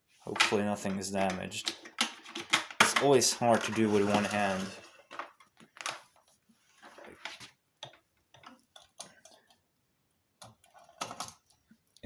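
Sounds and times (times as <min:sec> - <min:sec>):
vacuum cleaner parts clicking: 0:00.4 - 0:06.1.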